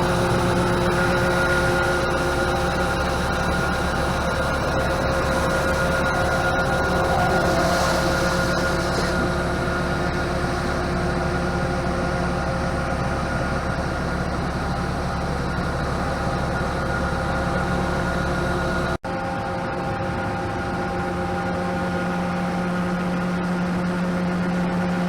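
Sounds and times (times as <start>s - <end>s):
farm machinery droning: 0.0s - 19.0s.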